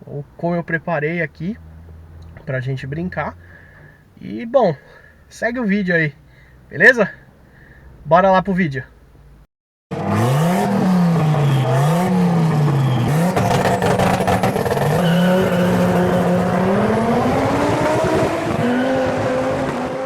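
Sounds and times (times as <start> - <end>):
car engine revving: 0.0 - 4.2, 6.2 - 20.0.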